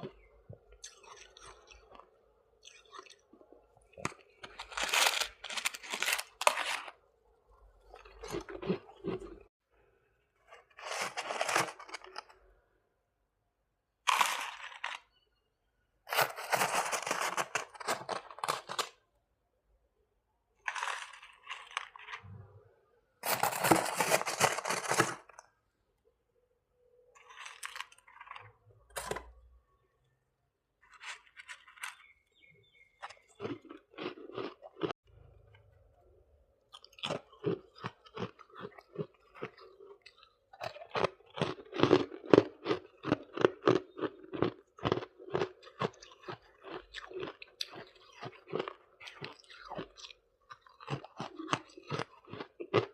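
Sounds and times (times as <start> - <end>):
frost being crunched and chewed: 0.2 - 7.0, 14.1 - 15.1, 16.1 - 19.0, 20.7 - 22.3, 23.2 - 25.4, 27.2 - 29.3, 33.0 - 35.0, 36.7 - 52.9.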